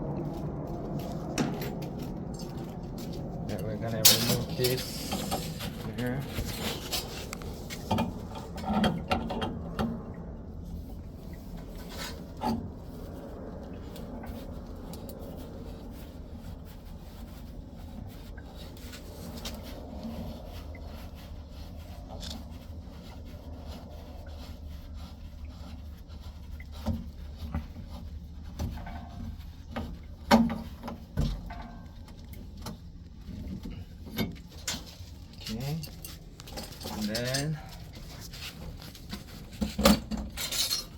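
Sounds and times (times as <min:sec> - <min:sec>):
steady low hum: 0:00.0 - 0:40.9
scraping and rubbing: 0:00.4 - 0:09.6, 0:10.7 - 0:40.9.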